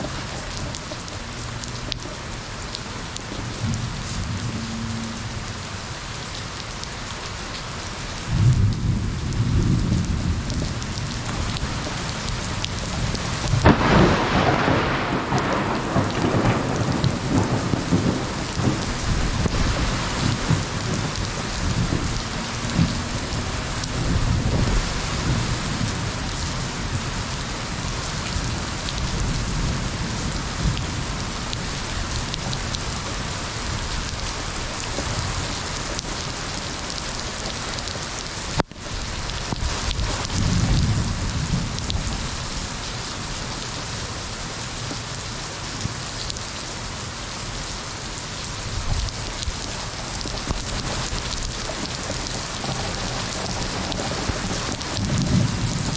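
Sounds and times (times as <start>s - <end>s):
heavy rain: 0.0s - 55.9s
thunder rolling: 8.3s - 38.6s, 39.8s - 43.6s, 48.7s - 55.9s.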